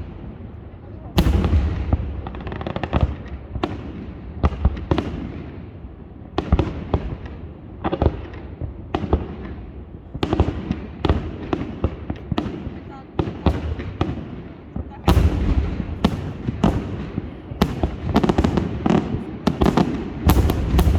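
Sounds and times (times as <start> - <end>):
firework shells bursting: 11.0 - 20.9.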